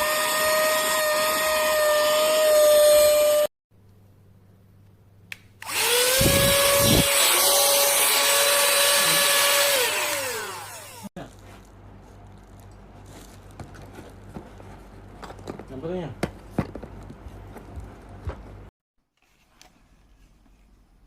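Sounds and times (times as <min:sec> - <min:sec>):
small motor high whine: 0:05.6 - 0:11.1.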